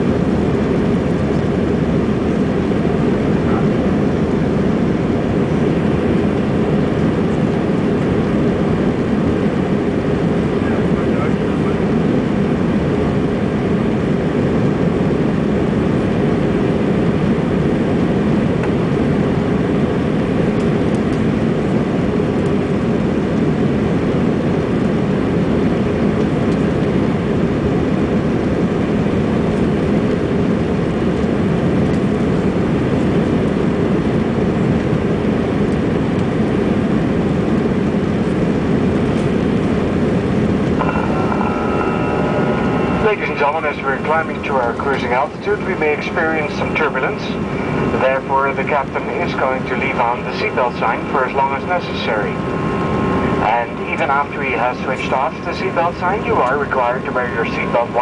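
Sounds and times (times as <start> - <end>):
jet engines and rushing air: 0.0 - 58.0
brief steady tones: 40.8 - 45.1.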